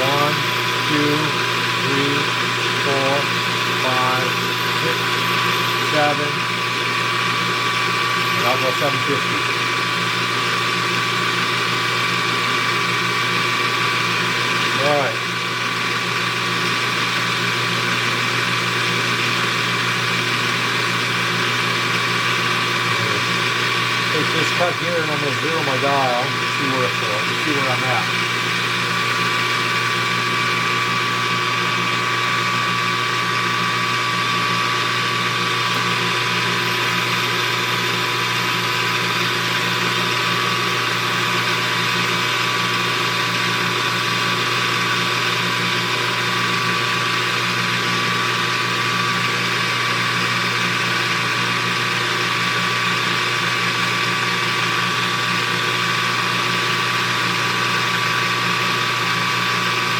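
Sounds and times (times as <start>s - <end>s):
metal lathe cutting with whine: 0.0s - 59.9s.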